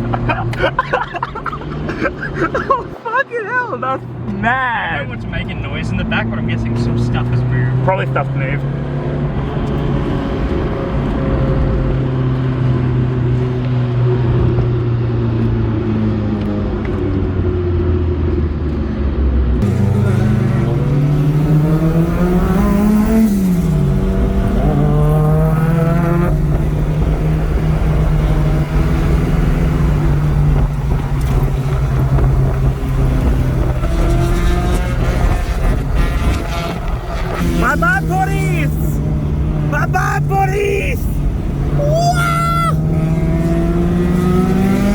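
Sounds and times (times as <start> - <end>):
car engine revving: 0.0 - 17.0, 19.5 - 44.9.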